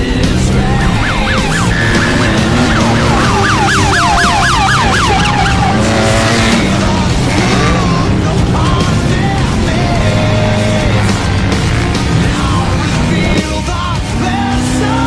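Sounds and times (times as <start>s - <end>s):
siren-like wail sweeps: 0.8s - 8.0s.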